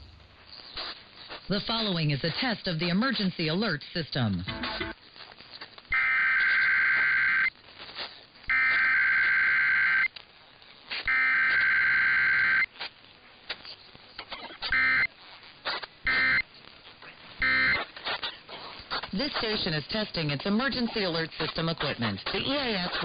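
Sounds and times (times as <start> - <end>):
buzzing digital data bursts: 11.0 - 12.7, 14.6 - 15.1, 16.0 - 16.5, 17.4 - 17.9.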